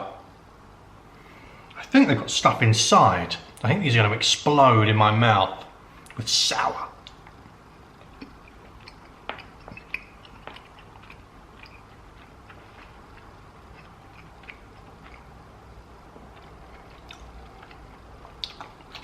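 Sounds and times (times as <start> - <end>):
wet chewing mouth clicks: 7.0 - 15.5, 16.2 - 19.0.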